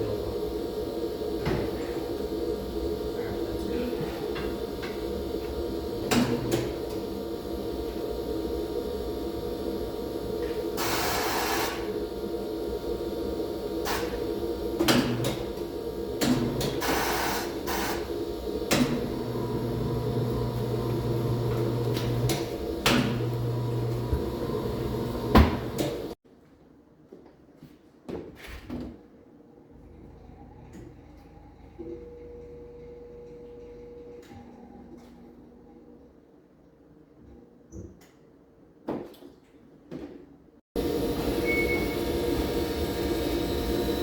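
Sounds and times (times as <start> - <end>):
machine hum: 0.0 - 26.2, 40.8 - 44.0
motor running: 0.0 - 26.2, 40.8 - 44.0
air hissing: 10.6 - 12.0, 13.1 - 26.2.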